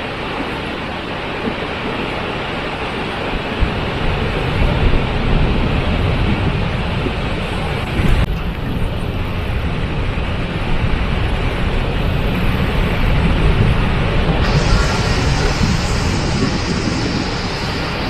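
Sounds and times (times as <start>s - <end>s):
waterfall rushing: 14.4s - 18.0s.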